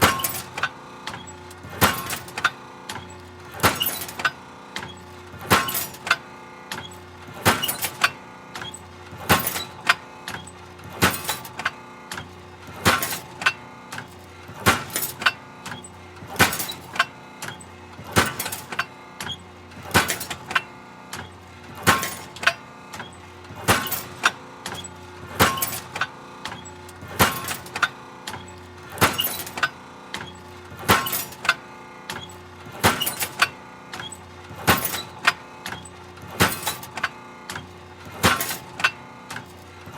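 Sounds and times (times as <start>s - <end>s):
metallic pounding and squeaking: 32.2s - 33.4s.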